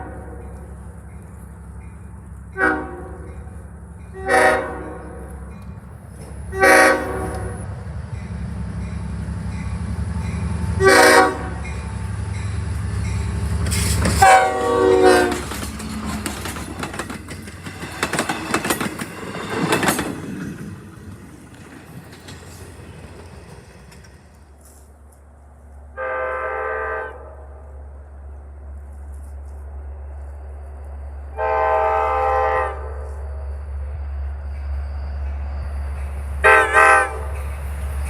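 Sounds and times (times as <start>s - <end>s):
train horn blasts: 2.5s - 3.5s, 4.1s - 5.5s, 6.5s - 7.7s, 10.7s - 11.8s, 14.2s - 15.6s, 25.9s - 27.8s, 31.3s - 33.3s, 36.4s - 37.4s
train wheels clattering on rails: 5.4s - 24.9s.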